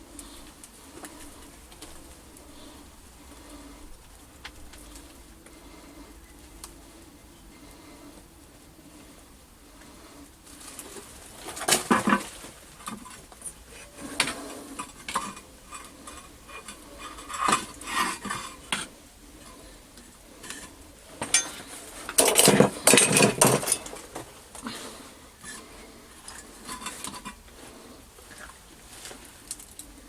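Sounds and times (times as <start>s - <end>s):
metal clanking and clinking: 20.4s - 24.3s.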